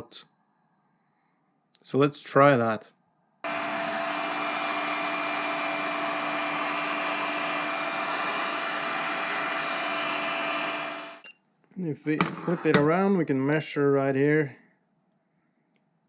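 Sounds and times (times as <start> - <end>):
heat gun blowing air: 3.5 - 11.2.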